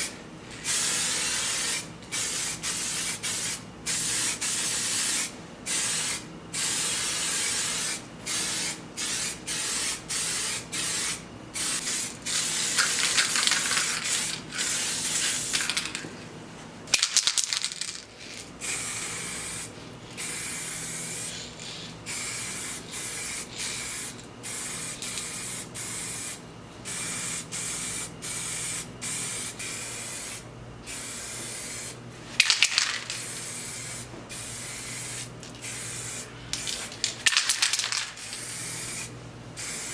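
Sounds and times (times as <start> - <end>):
spray gun hissing: 18.6 - 32.0, 33.2 - 36.9.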